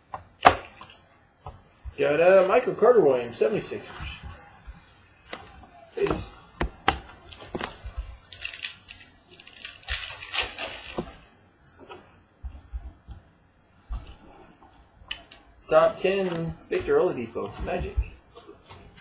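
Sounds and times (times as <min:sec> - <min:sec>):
cards rustling and sliding: 0:07.2 - 0:11.2.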